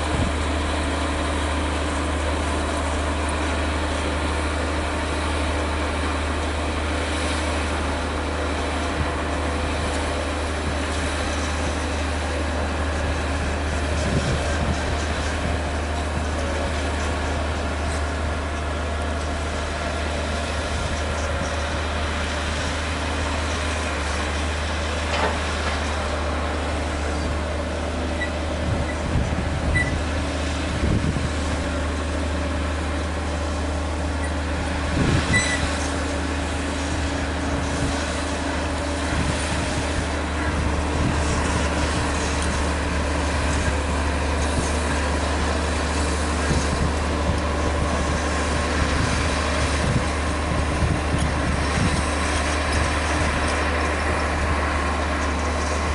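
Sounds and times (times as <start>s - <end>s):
diesel engine rumbling: 0.0s - 55.9s
short squeaks: 28.2s - 29.1s, 29.7s - 30.0s, 35.3s - 36.0s.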